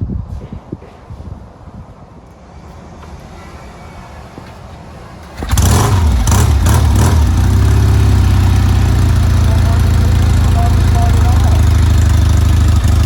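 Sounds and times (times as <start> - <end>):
motorcycle engine starting and revving: 3.0 - 13.0.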